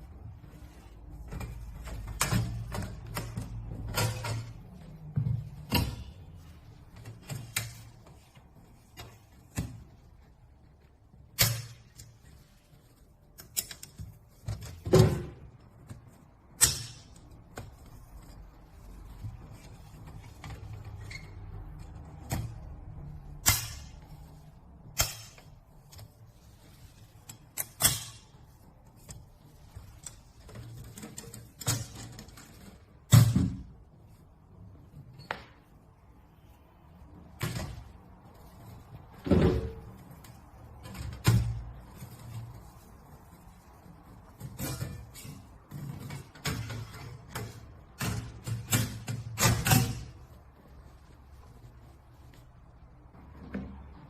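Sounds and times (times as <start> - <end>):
folding metal table clicking and knocking: 1.3 - 6.3, 16.6 - 17.8, 26.8 - 28.5, 29.5 - 33.7, 39.2 - 42.5, 44.4 - 50.2.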